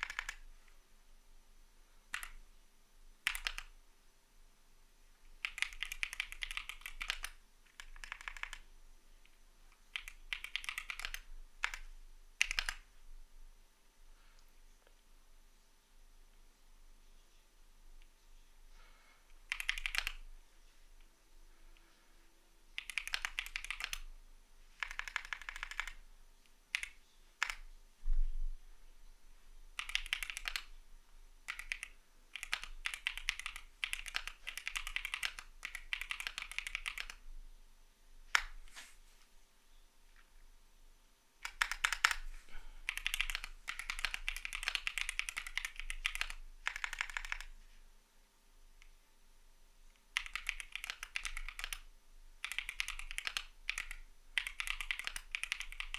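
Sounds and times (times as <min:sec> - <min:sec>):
mechanical keyboard typing: 0:00.0 - 0:00.4, 0:02.1 - 0:02.4, 0:03.2 - 0:03.7, 0:05.4 - 0:08.7, 0:10.0 - 0:12.8, 0:19.5 - 0:20.2, 0:22.8 - 0:24.1, 0:24.8 - 0:26.0, 0:26.7 - 0:27.6, 0:29.8 - 0:30.7, 0:31.5 - 0:37.2, 0:41.4 - 0:42.2, 0:42.8 - 0:47.5, 0:50.1 - 0:55.9.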